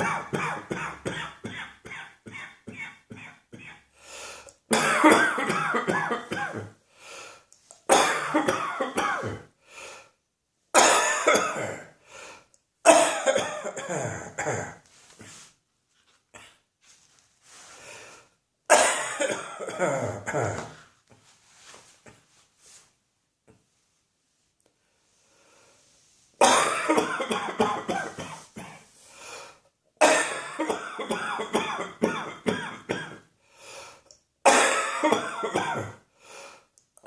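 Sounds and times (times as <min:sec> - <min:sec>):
person coughing: 0:00.0 - 0:03.9, 0:04.7 - 0:06.8, 0:07.9 - 0:09.5, 0:10.8 - 0:12.0, 0:12.9 - 0:14.8, 0:18.7 - 0:20.8, 0:26.4 - 0:28.9, 0:30.0 - 0:33.3, 0:34.4 - 0:36.0.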